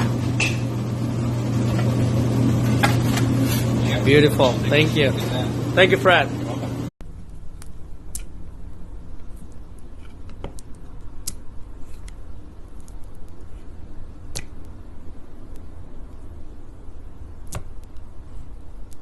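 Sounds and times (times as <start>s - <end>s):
sticky honey clicks and pops: 14.3s - 14.7s.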